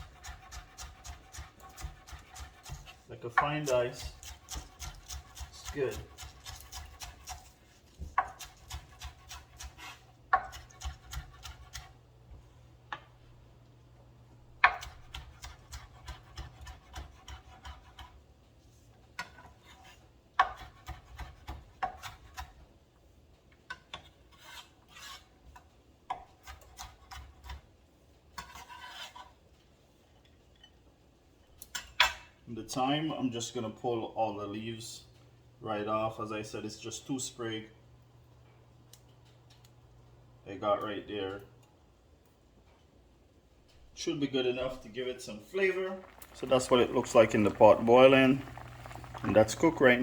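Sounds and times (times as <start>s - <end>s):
knife chopping on cutting board: 0.0s - 11.9s, 14.6s - 18.2s.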